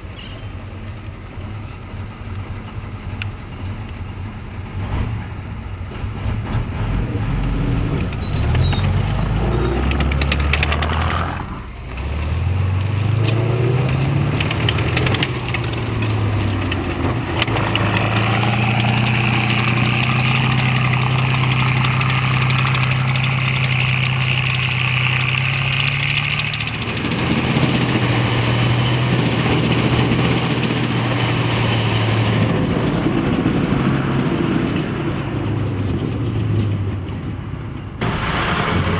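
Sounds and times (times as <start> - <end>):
tank diesel engine revving: 1.8 - 38.9.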